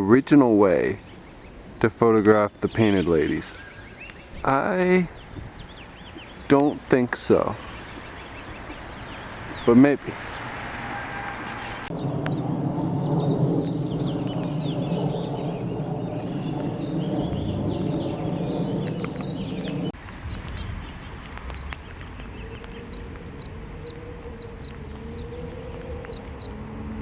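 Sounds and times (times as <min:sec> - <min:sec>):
birds chirping: 0:00.0 - 0:27.0
low hum: 0:11.9 - 0:20.0
faint high ticks: 0:21.3 - 0:26.6.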